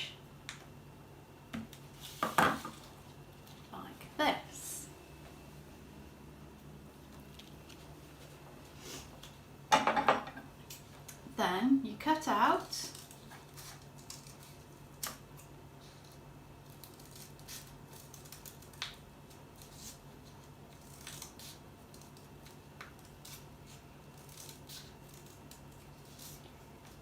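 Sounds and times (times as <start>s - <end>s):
scissors cutting paper: 12.8s - 15.2s, 16.0s - 27.0s.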